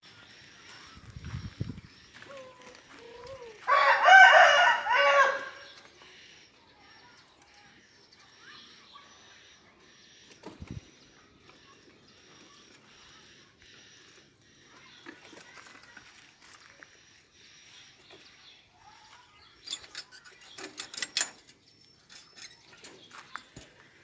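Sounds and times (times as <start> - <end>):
rooster crowing: 3.6 - 5.7.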